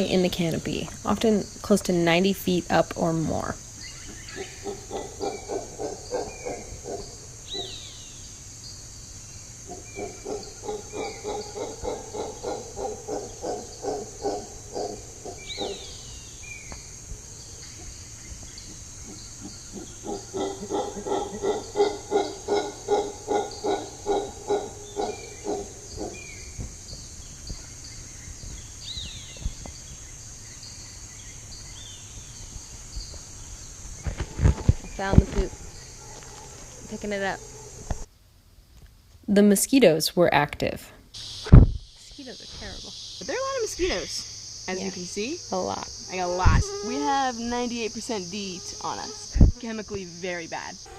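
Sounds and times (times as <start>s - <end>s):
high insect buzz: 0.0s - 38.1s, 41.1s - 50.9s
howler monkeys howling: 3.4s - 8.2s, 9.6s - 26.6s, 43.2s - 50.9s
bird chirps: 3.7s - 34.2s.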